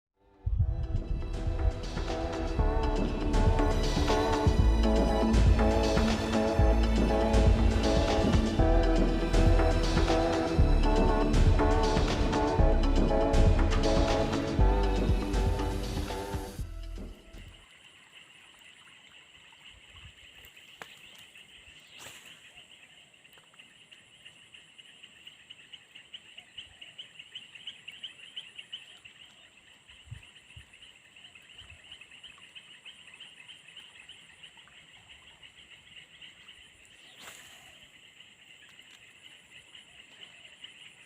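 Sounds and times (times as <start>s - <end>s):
insects chirring: 17.0s - 41.0s.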